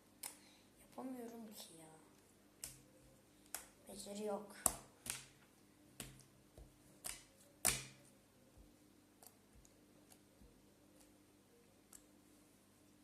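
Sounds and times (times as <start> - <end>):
sticky slime clicks and pops: 7.0 - 8.0.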